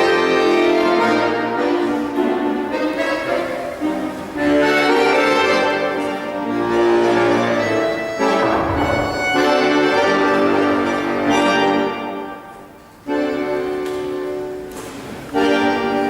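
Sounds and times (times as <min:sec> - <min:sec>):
accordion music: 0:00.0 - 0:09.7.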